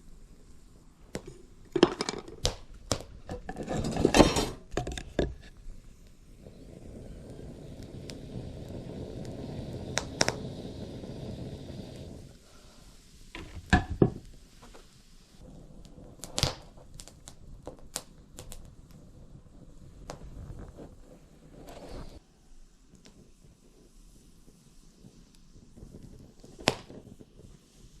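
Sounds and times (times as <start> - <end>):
objects knocking and clicking: 1.1 - 5.5, 13.4 - 14.2.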